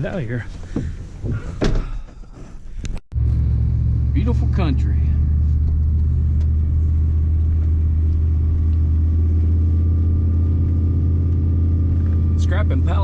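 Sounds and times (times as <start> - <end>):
truck engine droning: 3.1 - 13.0.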